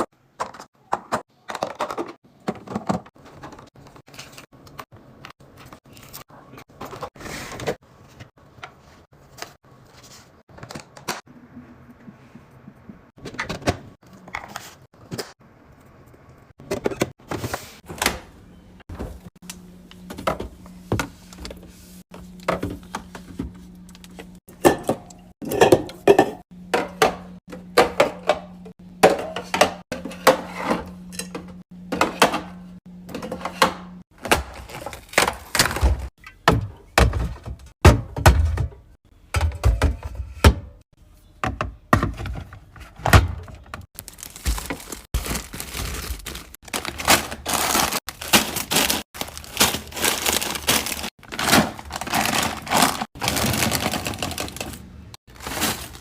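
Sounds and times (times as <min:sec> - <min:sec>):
food containers clicking and thunking: 0:00.0 - 0:05.9, 0:22.2 - 0:40.8, 0:41.4 - 0:56.0.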